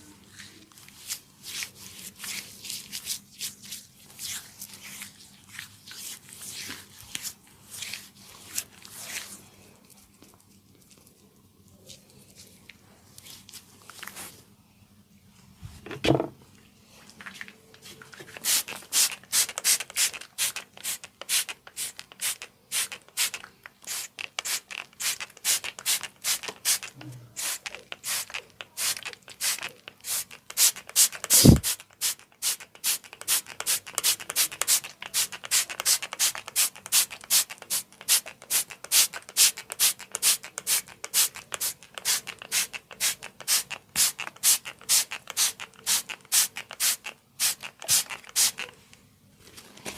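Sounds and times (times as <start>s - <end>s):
thump: 15.9s - 16.3s.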